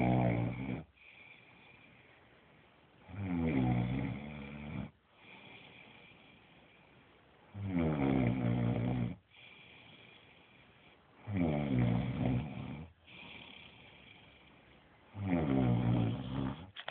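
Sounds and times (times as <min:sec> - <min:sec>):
child snoring: 0:00.0 - 0:00.9, 0:03.1 - 0:05.7, 0:07.6 - 0:09.2, 0:11.2 - 0:14.4, 0:15.2 - 0:16.8
quiet breathing: 0:00.0 - 0:03.4, 0:04.0 - 0:07.6, 0:08.3 - 0:16.8.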